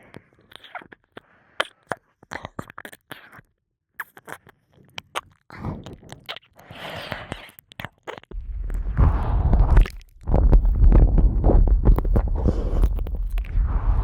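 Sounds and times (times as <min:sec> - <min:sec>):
wet mouth clicks and smacks: 0:00.4 - 0:08.4
rustling: 0:08.3 - 0:14.0.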